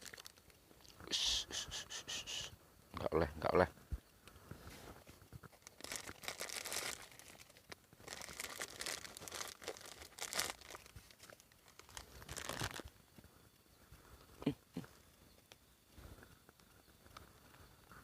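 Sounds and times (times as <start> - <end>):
crinkling rustling: 0.0 - 1.0, 4.5 - 13.0.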